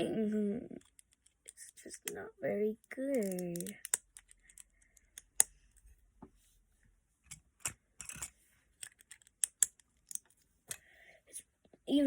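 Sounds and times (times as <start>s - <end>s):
plastic bricks clicking and clattering: 3.1s - 5.5s, 8.0s - 10.3s.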